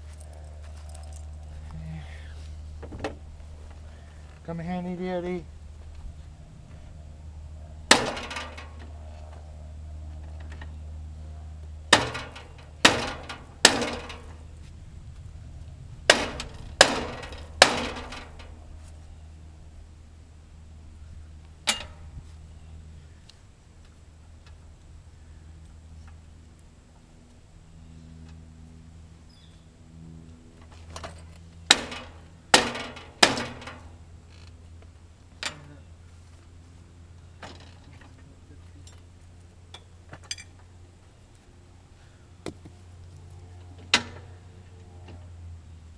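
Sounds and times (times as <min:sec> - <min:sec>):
steady low hum: 0:00.0 - 0:45.9
hammer striking metal: 0:07.9 - 0:08.6, 0:11.9 - 0:14.4, 0:16.1 - 0:18.4, 0:21.7 - 0:22.0, 0:31.7 - 0:33.8.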